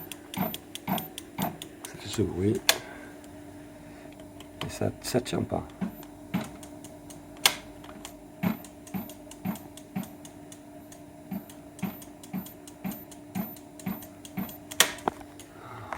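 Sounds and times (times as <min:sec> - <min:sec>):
sharp clicking from motor: 0:00.0 - 0:03.4, 0:05.6 - 0:15.5.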